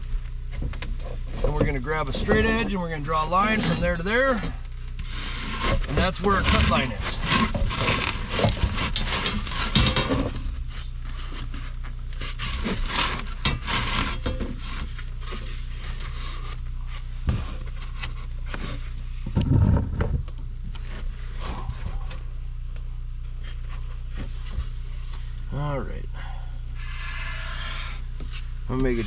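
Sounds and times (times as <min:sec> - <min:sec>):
steady low hum: 0:00.0 - 0:29.0
straight edge scraping on foam board: 0:03.4 - 0:18.9.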